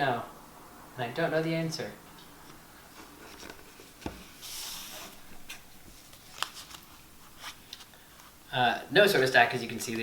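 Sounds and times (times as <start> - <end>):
cards sliding rustle: 3.0 - 8.4.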